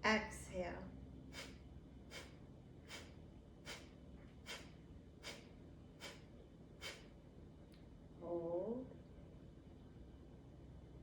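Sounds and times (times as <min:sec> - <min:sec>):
person exhaling sharply through nose: 0:02.9 - 0:03.1, 0:04.5 - 0:07.1.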